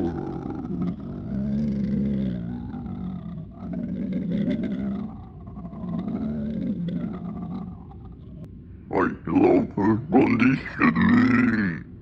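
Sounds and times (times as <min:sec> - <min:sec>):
low processed voice garbling: 0:00.0 - 0:12.0.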